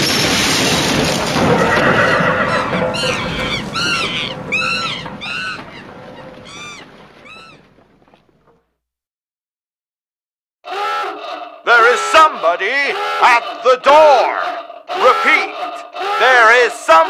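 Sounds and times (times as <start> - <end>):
explosion roar rumbling: 0.0 - 8.0
short animal-like calls: 3.0 - 7.6.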